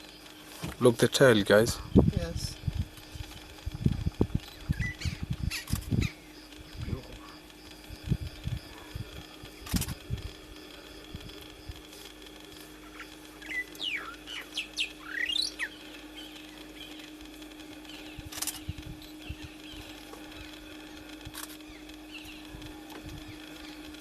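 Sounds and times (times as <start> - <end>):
steady low hum: 0.0 - 24.0
bird chirping: 3.0 - 8.9, 12.8 - 20.7, 21.6 - 24.0
sharp clicks: 4.4 - 8.6, 9.6 - 13.9, 16.9 - 24.0.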